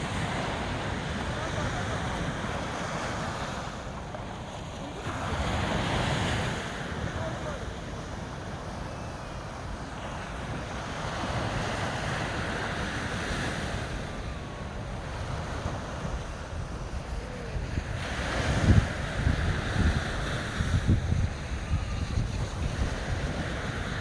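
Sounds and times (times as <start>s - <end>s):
sea waves washing onto beach: 0.0s - 24.0s
wind buffeting microphone: 0.0s - 24.0s.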